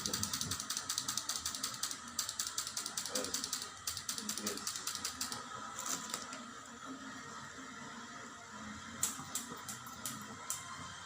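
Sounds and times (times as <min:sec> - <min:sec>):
rapid mechanical clicking of cupping tools: 0:00.0 - 0:06.2.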